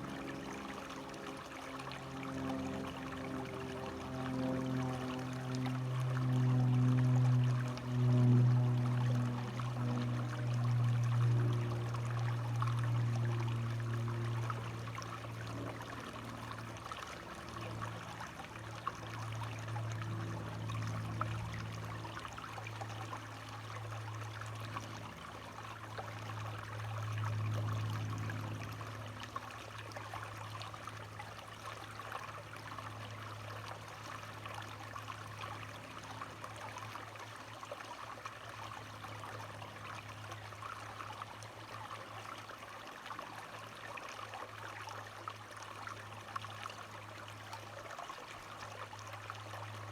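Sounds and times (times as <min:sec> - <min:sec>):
low hum: 0:00.0 - 0:29.5
water trickling: 0:00.0 - 0:49.9.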